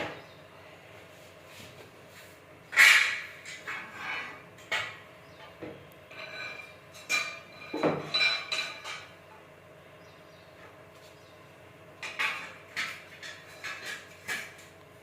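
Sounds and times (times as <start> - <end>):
metal objects clinking: 6.1 - 9.1.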